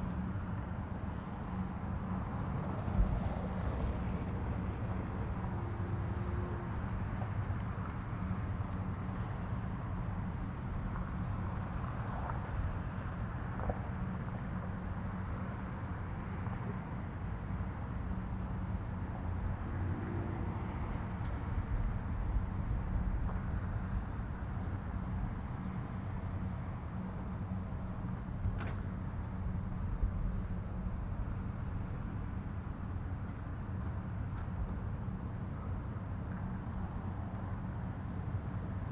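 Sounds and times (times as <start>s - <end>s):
distant highway traffic rumble: 0.0s - 38.9s.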